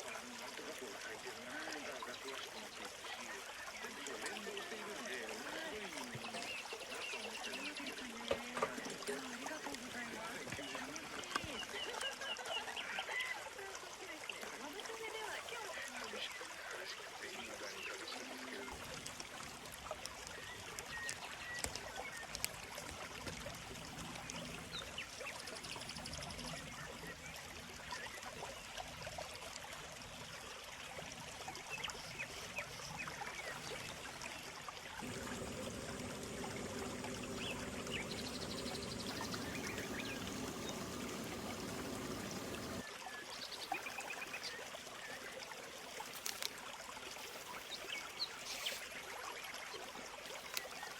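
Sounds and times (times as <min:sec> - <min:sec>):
shallow stream babbling: 0:00.0 - 0:50.9
low steady sound with held tones: 0:35.0 - 0:42.8
small birds chirping: 0:35.0 - 0:42.8.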